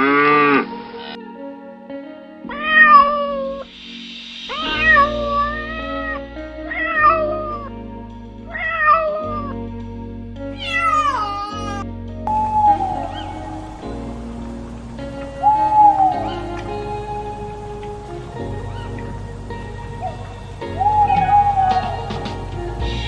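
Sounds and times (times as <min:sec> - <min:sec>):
background music: 0:00.0 - 0:23.0
cat meowing: 0:10.6 - 0:11.8.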